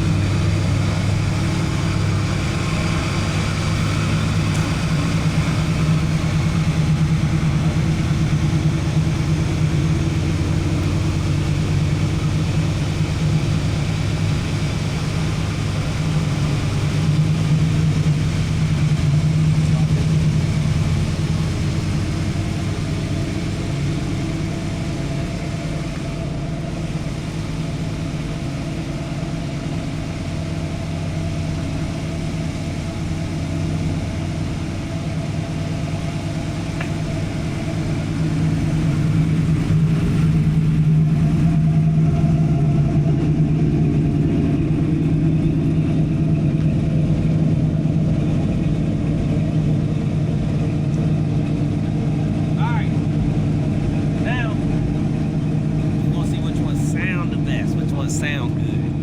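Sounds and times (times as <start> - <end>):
car engine idling: 0.0 - 59.0.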